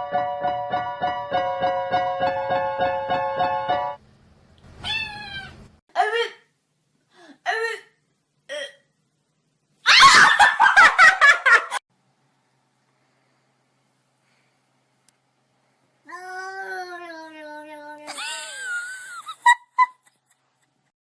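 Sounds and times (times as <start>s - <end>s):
cat meowing: 4.8s - 5.7s
rapid chopped cat cries: 4.8s - 5.7s.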